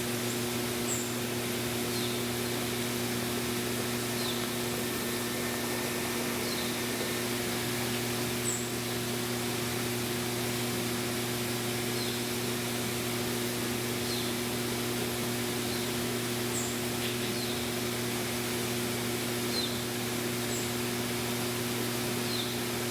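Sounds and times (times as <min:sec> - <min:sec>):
constant low hum: 0:00.0 - 0:22.9.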